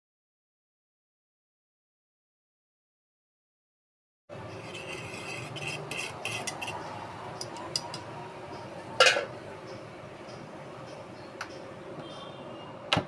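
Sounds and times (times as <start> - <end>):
metal utensil clinking against bowl: 4.7 - 8.1.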